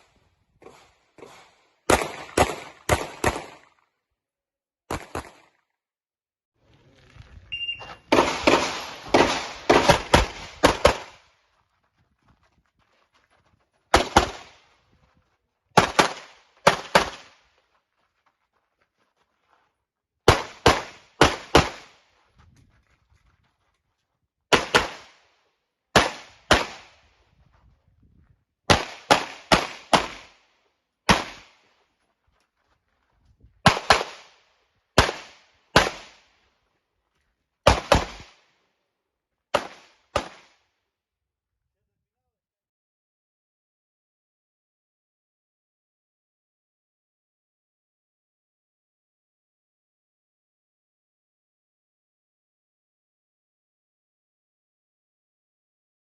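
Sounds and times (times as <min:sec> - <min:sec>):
pistol shots: 0:00.6 - 0:03.7, 0:08.1 - 0:11.3, 0:13.9 - 0:14.6, 0:15.8 - 0:17.4, 0:20.3 - 0:22.0, 0:24.5 - 0:25.2, 0:25.9 - 0:27.0, 0:28.7 - 0:30.4, 0:31.1 - 0:31.6, 0:33.6 - 0:34.4, 0:35.0 - 0:36.3, 0:37.6 - 0:38.5, 0:39.5 - 0:40.6
electronic timer beep: 0:07.5 - 0:08.0.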